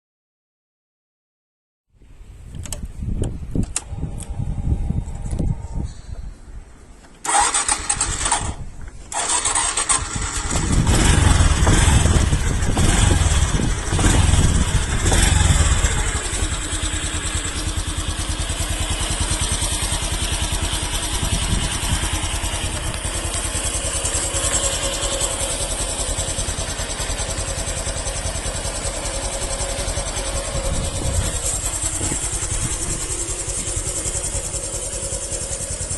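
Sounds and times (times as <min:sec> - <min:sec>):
motorcycle engine starting and idling: 0:02.4 - 0:35.9.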